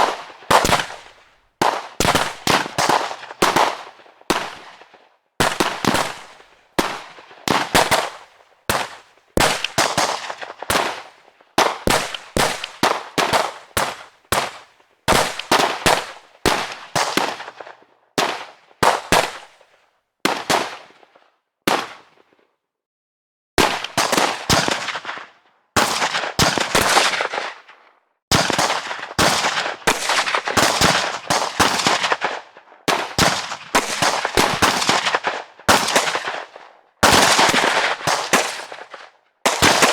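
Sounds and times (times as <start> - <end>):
gunshots: 0.0 - 19.6, 23.6 - 27.7, 28.3 - 39.9.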